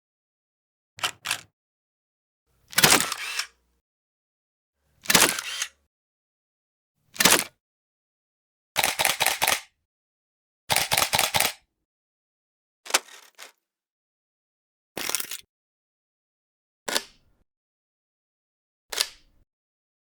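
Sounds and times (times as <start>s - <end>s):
camera shutter clicks: 2.7s - 3.5s, 5.0s - 5.7s, 8.8s - 9.6s, 10.7s - 11.6s.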